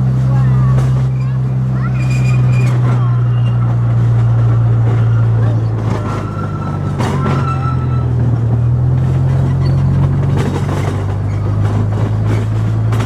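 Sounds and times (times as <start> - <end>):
train engine drone: 0.0 - 13.0
high squeal: 1.1 - 8.2.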